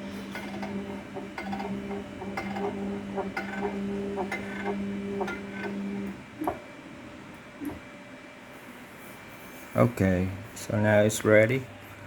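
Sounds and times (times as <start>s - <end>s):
stepper motors humming and ticking: 0.0s - 8.0s.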